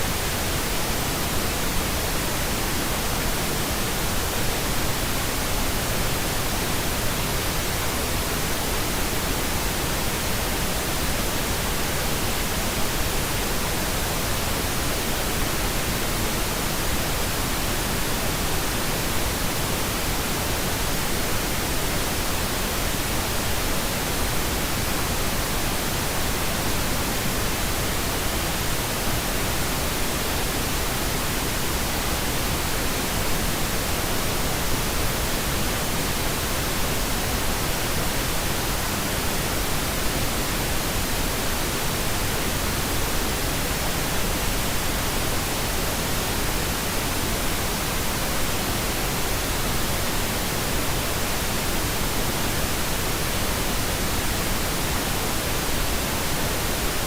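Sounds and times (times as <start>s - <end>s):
white noise hiss: 0.0s - 57.0s.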